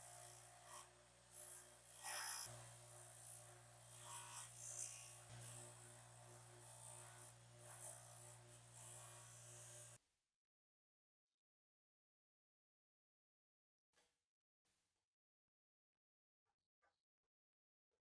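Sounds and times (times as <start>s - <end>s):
rasping strokes on metal: 0.0s - 10.0s.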